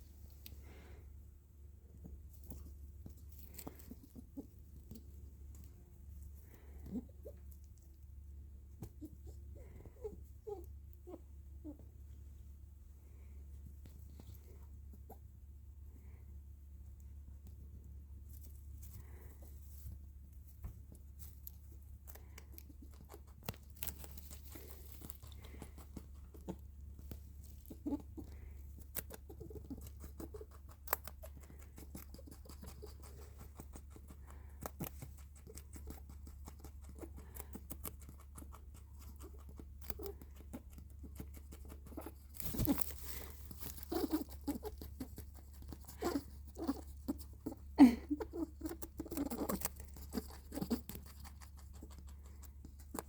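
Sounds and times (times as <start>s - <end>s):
low steady hum: 0.0s - 53.0s
rabbit pattering and clicking: 1.8s - 12.2s, 16.7s - 53.0s
rabbit squeaking: 3.3s - 5.2s, 8.8s - 12.1s, 14.1s - 15.5s, 22.2s - 53.0s.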